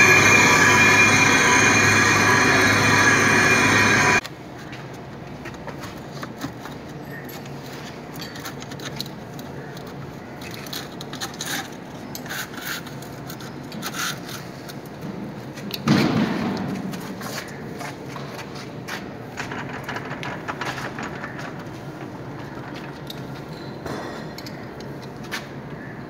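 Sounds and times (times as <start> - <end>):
low machine hum: 0.0 - 4.2.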